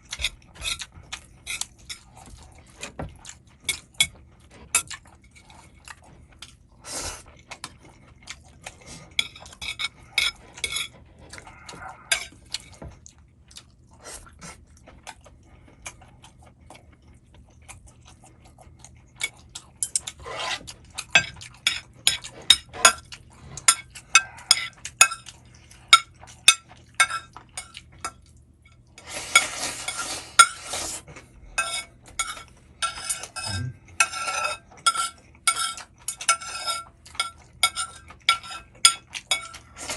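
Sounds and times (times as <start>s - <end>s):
utensils clinking against a bowl: 0.0s - 6.6s, 8.6s - 12.8s, 19.2s - 31.0s, 31.6s - 39.9s.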